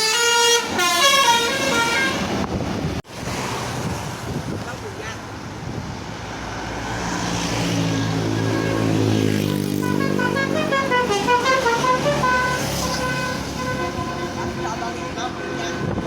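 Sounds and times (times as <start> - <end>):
multi-tone bus horn melody: 0.0 - 2.5, 7.9 - 16.0
bus engine: 0.0 - 16.0.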